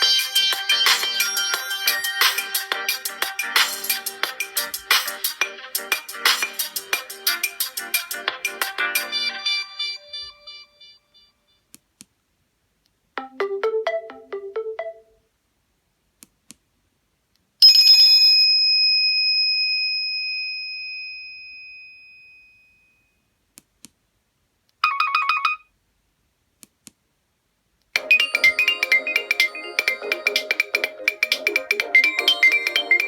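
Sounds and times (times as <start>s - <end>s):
rapid electronic trill: 0.0s - 9.2s, 28.0s - 33.0s
electronic notes: 0.0s - 10.7s, 28.0s - 33.0s
bell-like ping: 17.6s - 23.2s.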